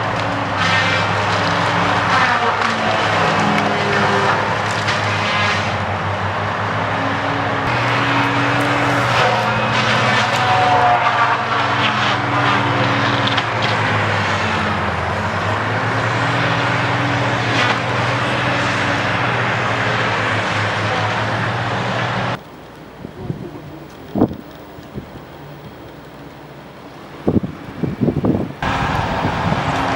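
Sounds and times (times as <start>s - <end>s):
crackling and snapping wood: 0.0s - 5.9s, 7.6s - 19.3s, 23.6s - 26.5s
heavy machinery engine running: 0.0s - 29.9s.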